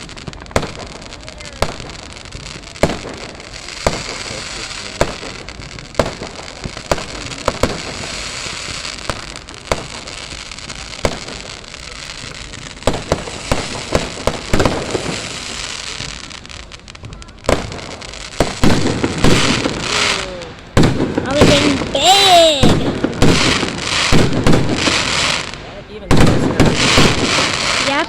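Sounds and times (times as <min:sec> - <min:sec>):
fireworks bangs: 0:00.0 - 0:28.0
fireworks crackling: 0:00.0 - 0:28.0.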